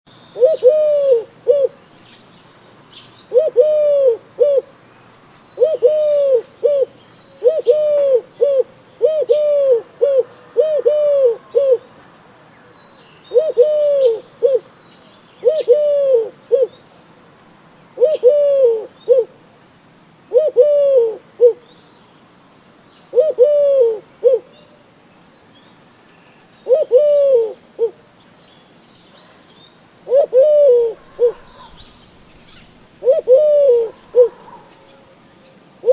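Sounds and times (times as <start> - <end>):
dove cooing: 0.4 - 1.8, 3.3 - 4.7, 5.6 - 11.9, 13.3 - 14.7, 15.4 - 16.8, 18.0 - 19.4, 20.3 - 21.6, 23.1 - 24.6, 26.6 - 28.0, 30.0 - 35.1.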